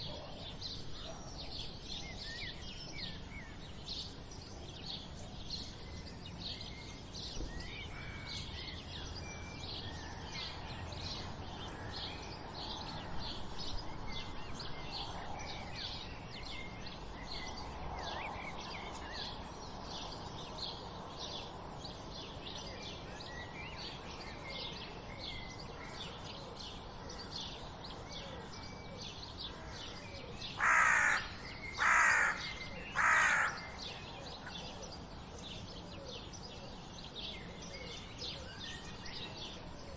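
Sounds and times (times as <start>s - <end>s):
small birds chirping: 0.0s - 39.9s
crow cawing: 30.6s - 33.7s.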